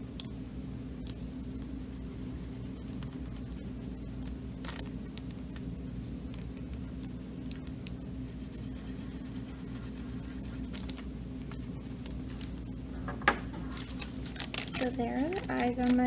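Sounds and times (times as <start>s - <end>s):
low room hum: 0.0s - 16.0s
marker scratching on paper bag: 8.2s - 12.7s, 13.6s - 16.0s.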